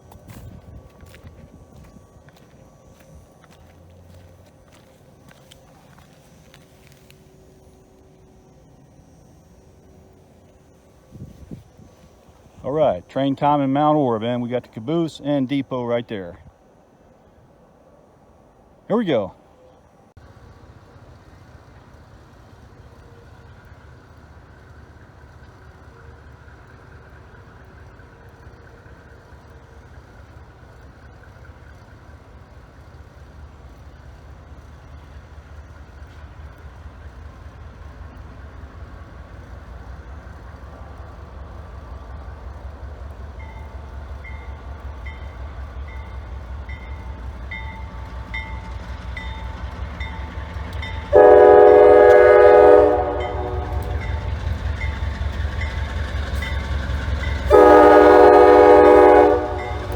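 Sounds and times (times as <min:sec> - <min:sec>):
diesel locomotive rumble: 0:00.0 - 0:59.9
crossing warning bell ringing: 0:38.2 - 0:59.9.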